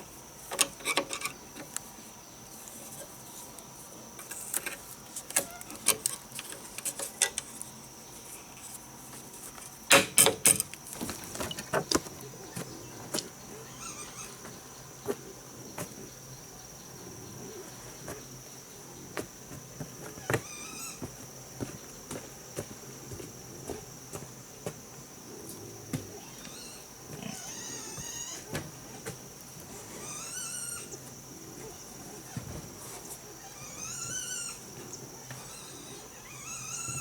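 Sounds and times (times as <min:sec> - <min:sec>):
high-pitched insect drone: 0:12.8 - 0:15.1, 0:33.0 - 0:37.0.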